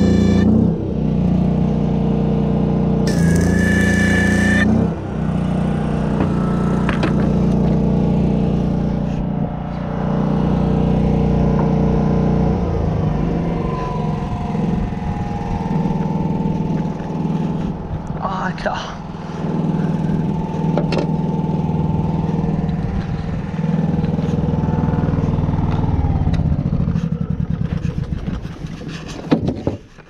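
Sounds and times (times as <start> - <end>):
high pitched tone: 0.0 - 0.5, 3.1 - 4.9
engine running steadily: 0.0 - 29.3.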